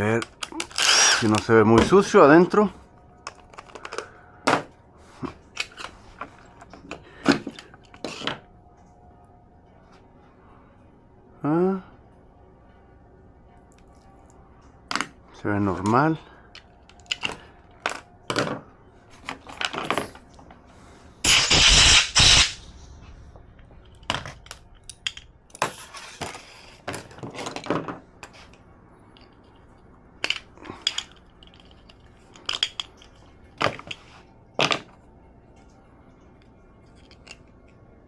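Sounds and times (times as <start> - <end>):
tools and parts clicking on bench: 15.8 - 18.6, 23.8 - 34.0, 36.9 - 37.8
loud rushing burst: 21.2 - 23.0.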